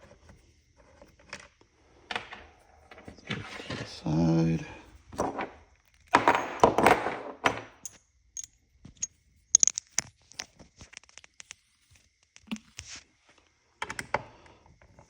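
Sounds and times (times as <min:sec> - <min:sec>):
small metal clicks and clinks: 0:07.8 - 0:11.6
metal parts scraping clatter: 0:09.6 - 0:11.0.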